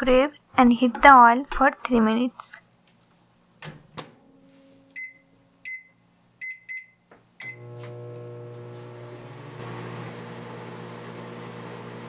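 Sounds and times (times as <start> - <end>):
microwave oven humming: 3.5 - 12.0
microwave keypad beeps: 5.0 - 7.7.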